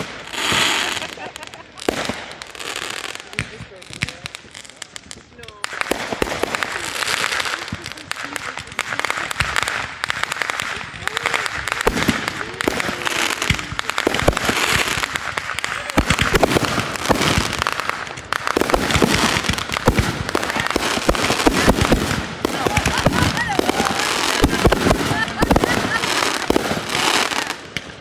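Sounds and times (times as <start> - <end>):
fireworks popping and crackling: 0.0 - 28.0.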